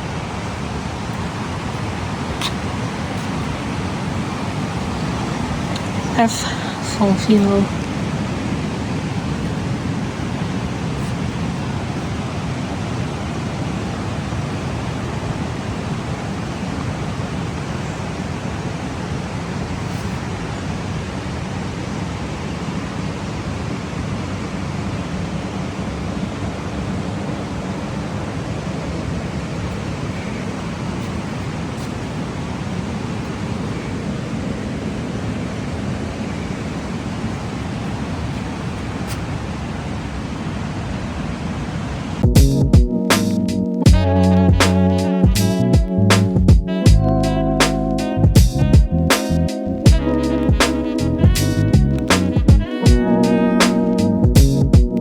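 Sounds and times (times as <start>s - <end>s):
flowing water rushing: 0.0s - 42.3s.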